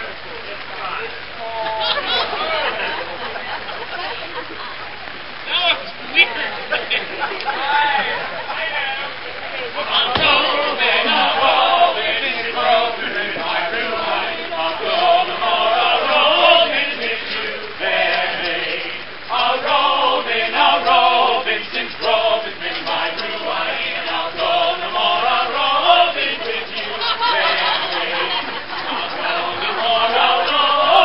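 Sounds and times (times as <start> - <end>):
men singing in chorus: 9.8 - 31.0.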